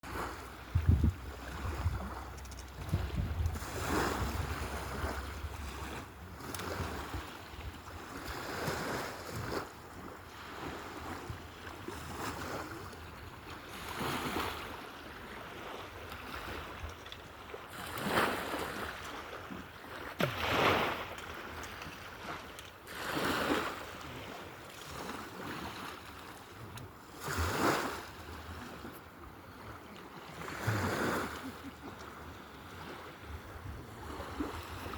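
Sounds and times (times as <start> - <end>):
wind rumbling on microphone: 0.1 - 9.6.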